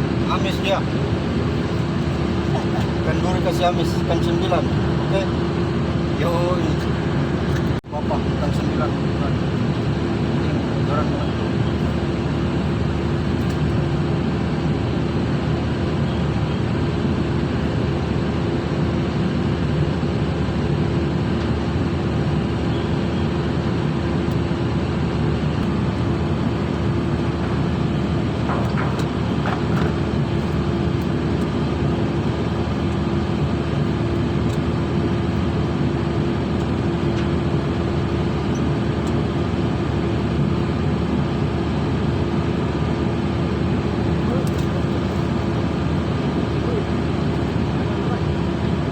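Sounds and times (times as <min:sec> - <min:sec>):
ship machinery droning: 0:22.0 - 0:40.2.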